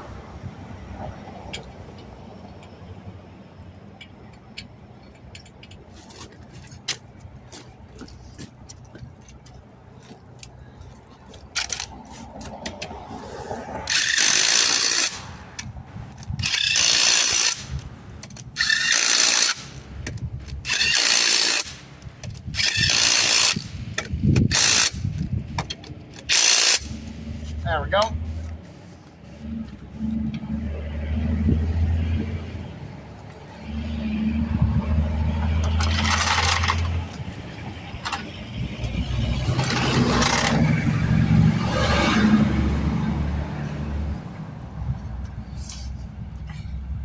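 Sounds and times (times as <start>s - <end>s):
ratchet wrench ratcheting: 11.5s - 11.9s, 13.9s - 27.1s, 35.6s - 38.7s, 39.4s - 40.8s.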